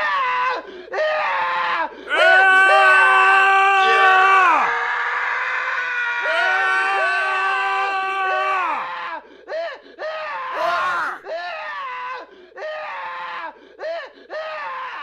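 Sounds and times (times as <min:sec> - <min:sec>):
man screaming: 0:02.1 - 0:09.2, 0:10.3 - 0:13.6.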